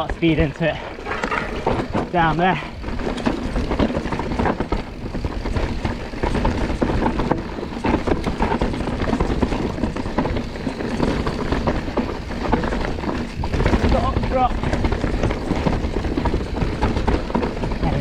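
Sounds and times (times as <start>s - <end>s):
bike and chain rattling: 0.0s - 18.0s
bike tyres rumbling over dirt: 0.0s - 18.0s.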